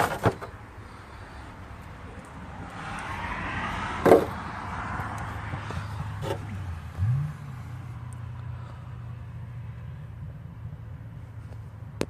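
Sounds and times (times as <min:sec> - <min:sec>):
vehicle engine running: 0:04.2 - 0:12.0.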